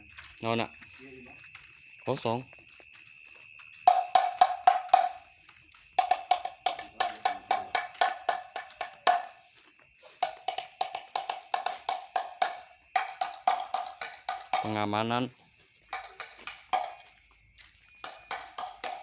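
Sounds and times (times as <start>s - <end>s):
bamboo slit drum knocking: 3.9s - 5.2s, 6.0s - 9.4s, 10.2s - 14.8s, 15.9s - 17.0s, 18.0s - 19.0s.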